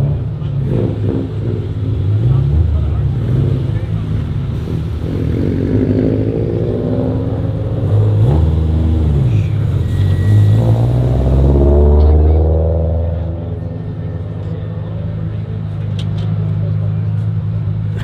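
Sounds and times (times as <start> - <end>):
car engines revving: 0.0 - 18.0.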